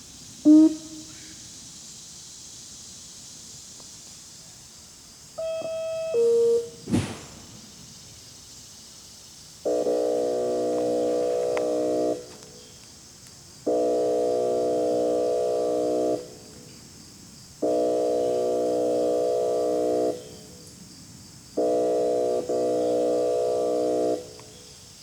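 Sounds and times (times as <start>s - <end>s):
two-tone electronic siren: 0.5s - 1.0s, 5.4s - 6.8s, 9.7s - 12.4s, 13.7s - 16.5s, 17.6s - 20.5s, 21.6s - 24.4s
air-horn blasts: 0.5s - 1.3s, 5.4s - 7.7s, 9.7s - 12.5s, 13.6s - 16.4s, 17.6s - 20.5s, 21.6s - 24.4s
sharp thump: 6.8s - 7.7s.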